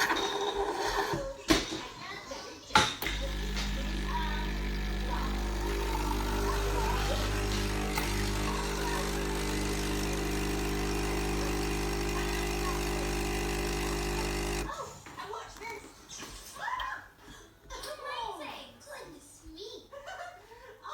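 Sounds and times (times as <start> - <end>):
espresso machine pump humming: 0.0 - 1.2, 3.0 - 14.7.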